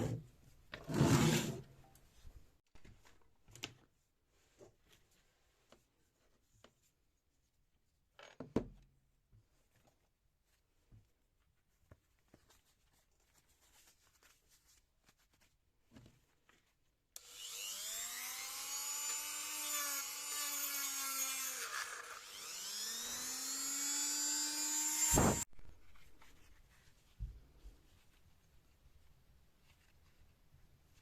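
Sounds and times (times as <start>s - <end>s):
power tool motor whine: 17.2s - 25.4s.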